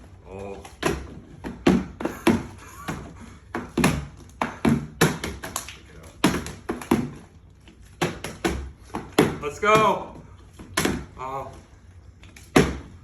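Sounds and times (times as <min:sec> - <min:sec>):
plastic bottles landing with thuds: 0:00.6 - 0:11.2, 0:12.4 - 0:13.0.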